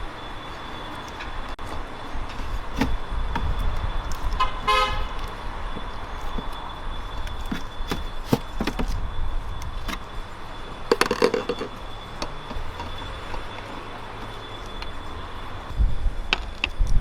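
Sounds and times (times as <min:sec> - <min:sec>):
low traffic rumble: 0:00.0 - 0:17.0
sharp clicks and knocks: 0:10.9 - 0:15.0.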